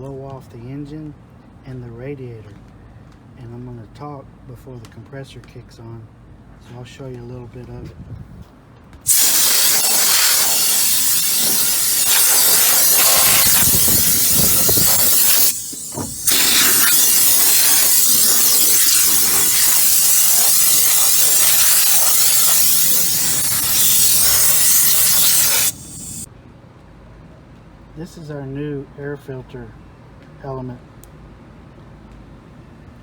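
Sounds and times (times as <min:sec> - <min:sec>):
compressed air blow gun hissing: 0:09.1 - 0:26.3.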